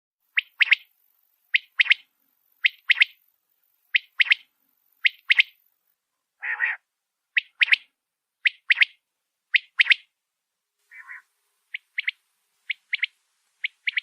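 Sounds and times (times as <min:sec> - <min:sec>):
harsh low bird call: 0:06.4 - 0:06.8, 0:10.9 - 0:14.0
quail calling: 0:06.4 - 0:07.9, 0:10.9 - 0:14.0.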